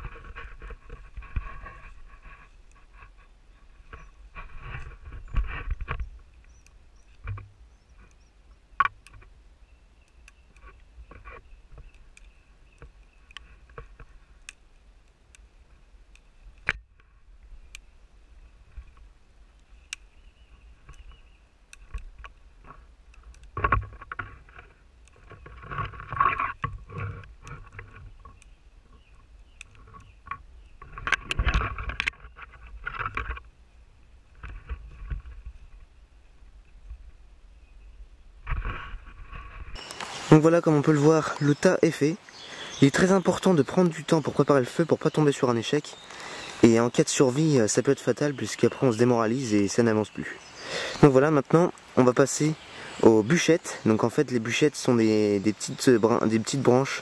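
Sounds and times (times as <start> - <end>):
branches and needles rustling: 0.0 - 57.0
twigs snapping: 20.8 - 33.5.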